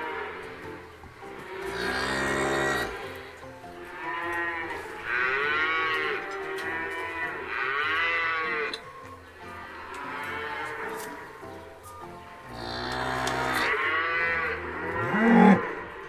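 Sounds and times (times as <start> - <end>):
cattle mooing: 1.6 - 3.2, 12.5 - 16.0.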